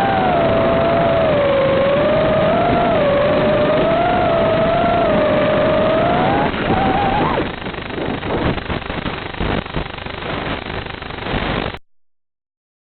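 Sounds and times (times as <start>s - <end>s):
electric motors whining: 0.0s - 8.1s
crackling hissing noise: 0.0s - 11.8s.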